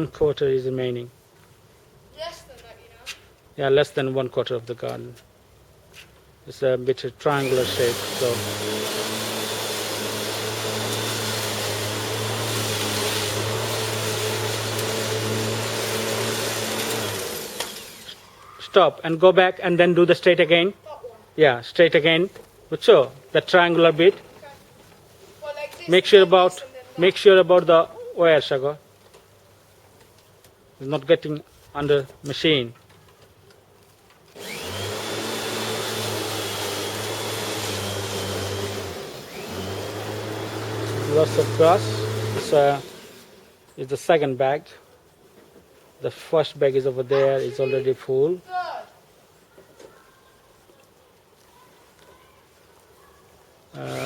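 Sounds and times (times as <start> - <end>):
electric lawnmower running: 7.3 - 18.2, 34.3 - 43.4, 53.8 - 54.0.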